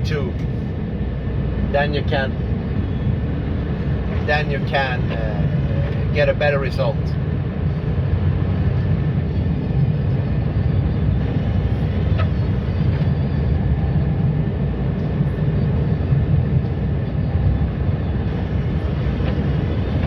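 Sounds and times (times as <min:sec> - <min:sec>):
truck engine and road rumble: 0:00.0 - 0:20.0.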